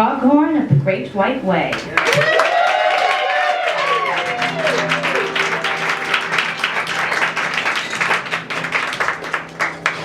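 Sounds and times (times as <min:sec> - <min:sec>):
audience applauding: 0:01.8 - 0:10.0
band holding a sustained chord: 0:04.5 - 0:09.6.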